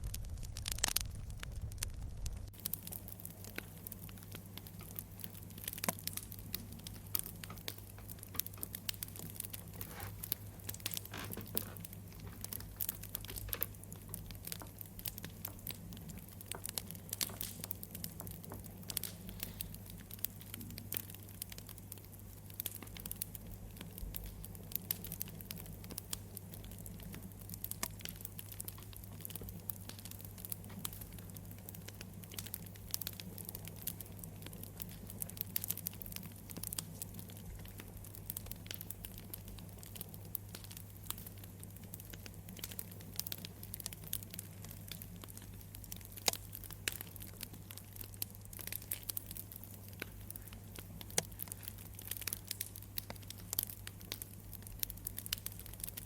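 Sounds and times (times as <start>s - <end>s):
low hum: 0.0s - 2.5s
wood fire crackling and popping: 0.0s - 56.0s.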